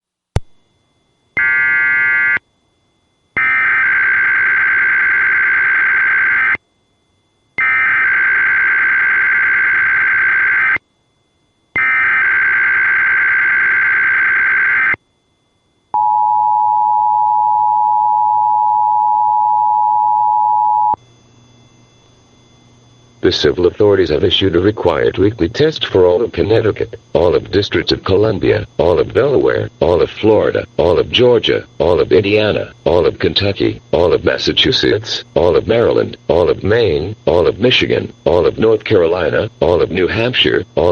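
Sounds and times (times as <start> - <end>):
screeching digital bursts: 7.6 - 10.8
two-tone attention signal: 16.0 - 21.0.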